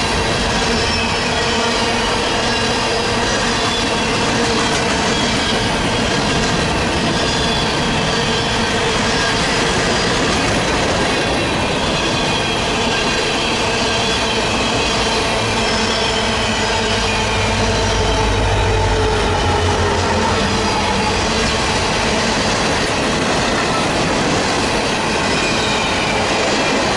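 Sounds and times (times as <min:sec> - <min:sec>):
train wheels rolling on rails: 0:00.0 - 0:26.9
wheel squeals: 0:24.8 - 0:26.8.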